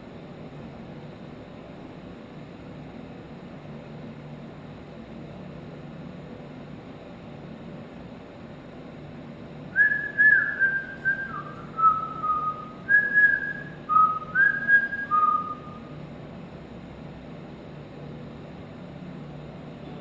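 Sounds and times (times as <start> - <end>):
steady low background hum: 0.0 - 20.0
person whistling a tune: 9.8 - 15.7.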